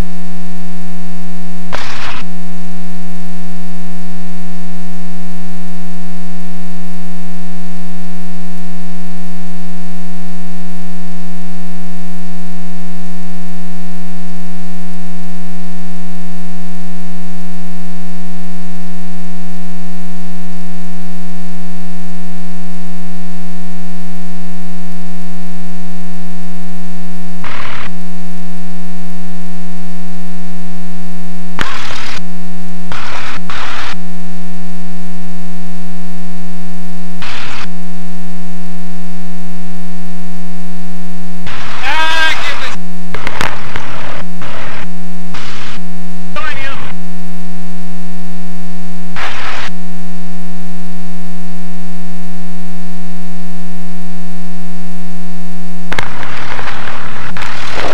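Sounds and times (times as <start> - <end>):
static bursts: 0.0 - 0.2, 1.0 - 2.3, 26.0 - 28.6, 31.4 - 34.1, 37.2 - 37.7, 41.2 - 47.1, 49.1 - 49.8, 55.8 - 57.9
loud buzzy electrical hum: 41.1 - 47.3, 55.2 - 57.9.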